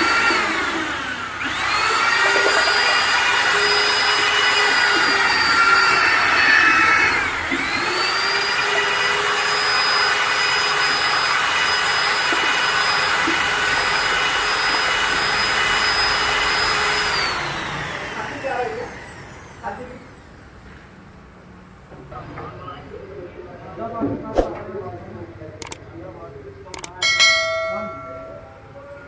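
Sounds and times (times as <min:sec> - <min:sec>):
electric grinder whining: 0:00.0 - 0:19.7.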